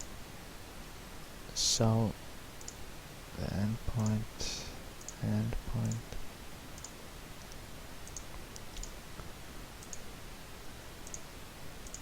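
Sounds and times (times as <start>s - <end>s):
steady low hiss: 0.0s - 12.0s
computer mouse clicks: 2.6s - 2.8s, 5.0s - 5.2s, 5.8s - 6.0s, 6.8s - 9.0s, 9.8s - 10.1s, 11.0s - 11.2s.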